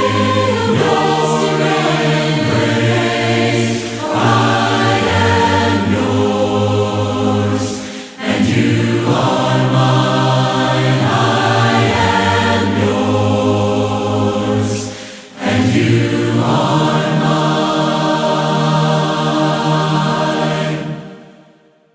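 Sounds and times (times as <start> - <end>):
congregation singing a hymn: 0.0 - 21.6
singers breathing: 3.6 - 4.2, 7.6 - 8.4, 14.7 - 15.6.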